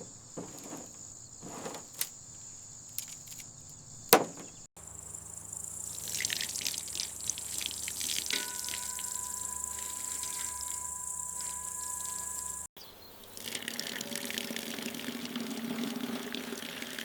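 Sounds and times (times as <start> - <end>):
high-pitched insect chirring: 4.8 - 12.7
water splashing and dripping: 5.6 - 17.0
two-note whistling tone: 8.4 - 12.7.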